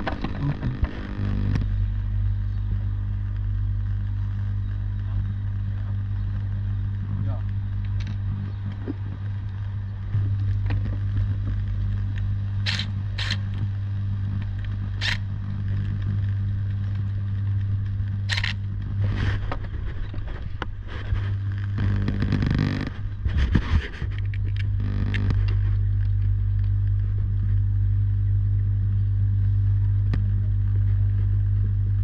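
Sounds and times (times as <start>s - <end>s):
steady low hum: 0.0s - 32.0s
sharp metal clicks: 12.6s - 13.5s.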